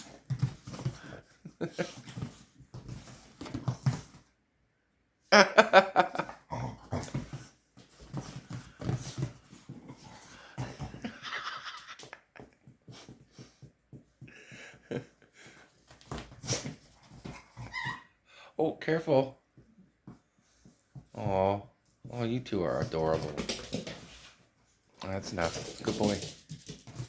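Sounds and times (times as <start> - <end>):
dogs scuffling: 0.0 - 4.3, 6.9 - 17.8, 21.9 - 27.0.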